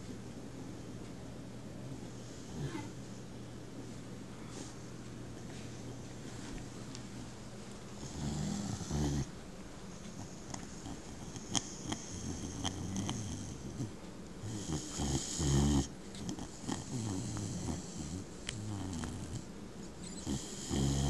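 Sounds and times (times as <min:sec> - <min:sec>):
dog snoring: 0:02.0 - 0:03.0, 0:08.0 - 0:09.3, 0:10.0 - 0:21.0.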